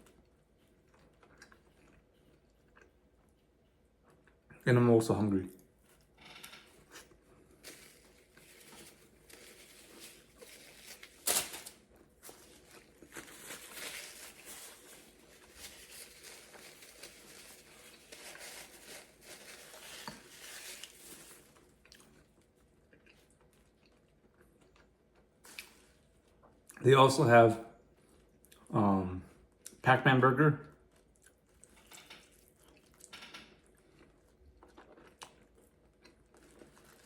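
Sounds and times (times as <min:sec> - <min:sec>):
wet chewing: 0:00.0 - 0:04.6, 0:11.8 - 0:26.8, 0:30.8 - 0:37.0.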